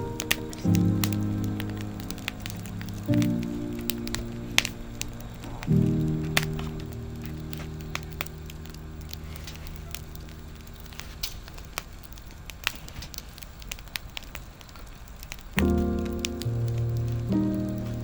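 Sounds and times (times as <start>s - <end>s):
music with sustained chords: 0.0s - 11.0s, 15.6s - 18.0s
wood fire crackling: 0.0s - 18.0s.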